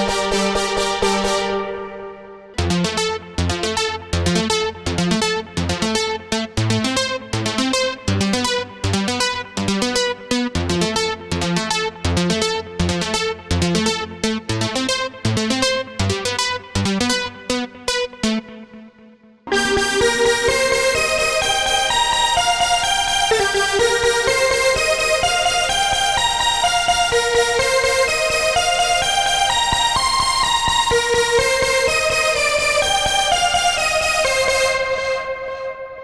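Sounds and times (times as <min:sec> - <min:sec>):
stepping bass line: 0:00.0 - 0:05.8, 0:19.5 - 0:35.8
synth pluck rhythmic pattern: 0:00.0 - 0:36.0.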